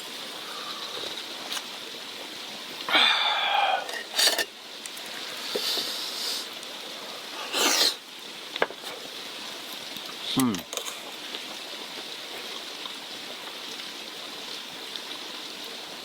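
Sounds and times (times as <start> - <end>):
steady background hiss: 0.0 - 16.0
person exhaling: 2.9 - 4.0
person sniffing: 7.4 - 8.0.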